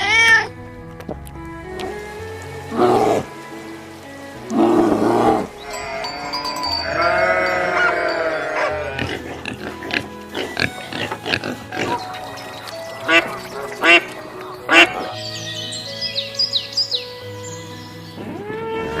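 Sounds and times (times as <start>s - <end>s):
background music: 0.0s - 19.0s
farm animal calls: 4.5s - 15.3s.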